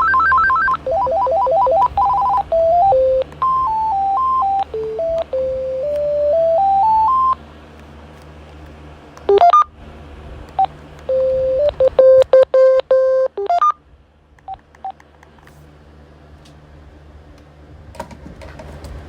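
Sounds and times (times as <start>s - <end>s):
phone ringtone beeps: 0.0s - 7.4s, 9.3s - 9.7s, 10.6s - 13.8s.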